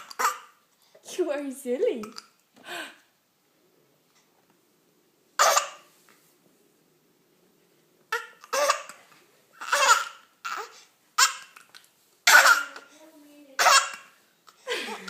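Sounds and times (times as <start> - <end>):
baby hiccuping: 0.0 - 0.6, 5.4 - 5.9, 8.1 - 13.0, 13.6 - 14.7
baby laughing: 9.6 - 11.7, 13.6 - 15.0.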